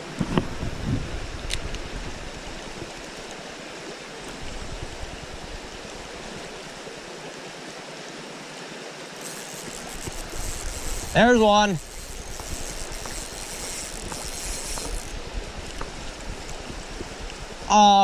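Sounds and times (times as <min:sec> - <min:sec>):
creek water flowing: 0:00.0 - 0:18.0.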